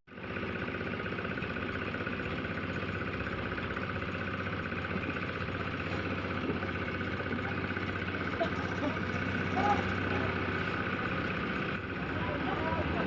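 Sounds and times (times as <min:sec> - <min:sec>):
engine running steadily: 0:00.1 - 0:13.0.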